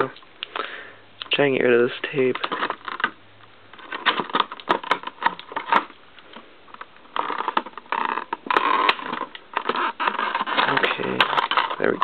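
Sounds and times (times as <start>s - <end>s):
plastic packaging crackling: 2.1s - 12.0s.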